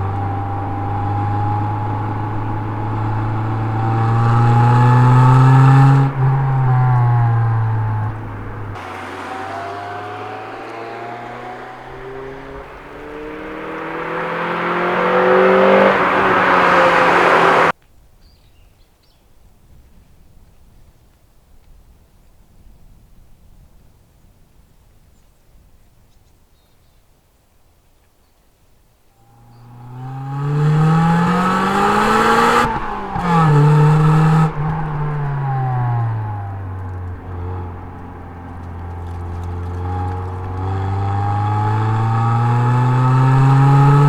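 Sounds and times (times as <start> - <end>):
car engine accelerating: 0.0 - 17.7, 29.3 - 44.0
gear change: 0.0 - 17.7, 29.4 - 44.0.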